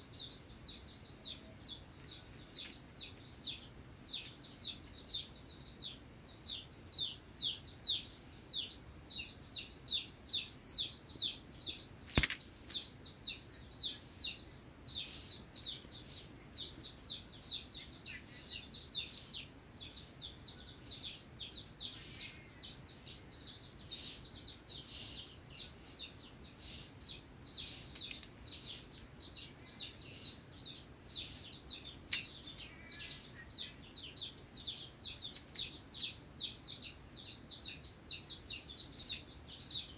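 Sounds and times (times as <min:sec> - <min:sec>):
small bird chirping: 0:00.0 - 0:39.9
sharp click: 0:12.0 - 0:12.4.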